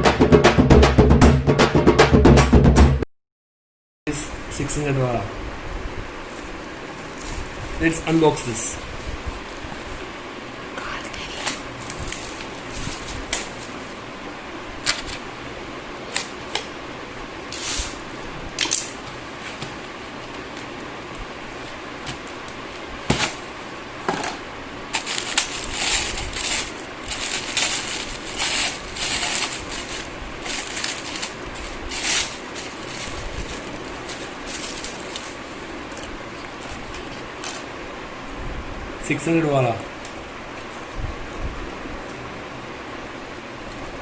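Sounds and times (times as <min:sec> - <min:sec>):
wrapping rustling and crinkling: 0:06.0 - 0:15.4, 0:16.0 - 0:38.4, 0:39.8 - 0:42.3.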